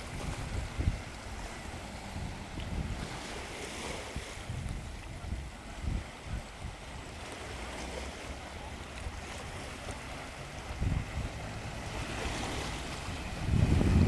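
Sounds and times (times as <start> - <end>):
wind gusting on microphone: 0.0 - 7.1, 9.5 - 14.0
sea waves washing: 0.0 - 14.0.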